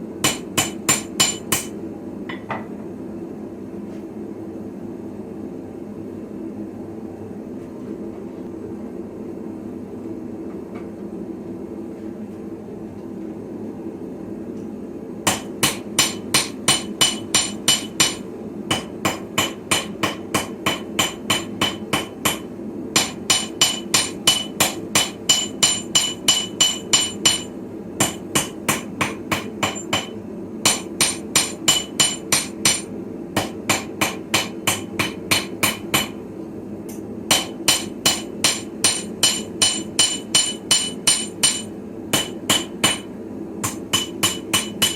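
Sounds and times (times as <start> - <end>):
hammer ringing on anvil: 15.3 - 22.4, 23.0 - 36.2, 37.3 - 44.9.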